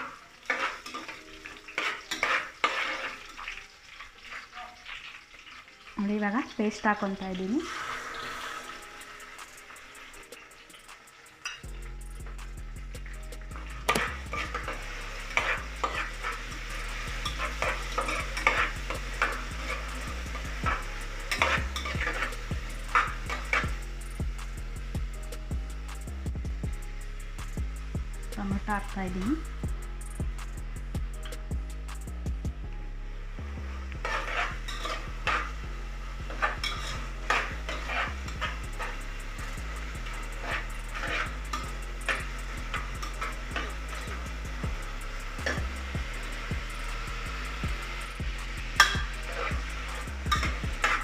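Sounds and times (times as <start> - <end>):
spatula clinking and scraping pan: 0.0 - 5.9, 7.8 - 12.4, 13.0 - 24.0, 34.0 - 35.6, 36.2 - 51.0
onions sizzling in a pan: 0.0 - 51.0.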